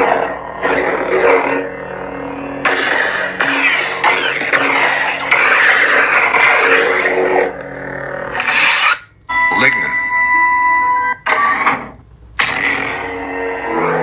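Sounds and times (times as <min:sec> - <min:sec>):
steady electronic tone: 0:00.0 - 0:04.5, 0:09.3 - 0:11.6
lightsaber hum: 0:00.0 - 0:11.1, 0:11.7 - 0:14.0.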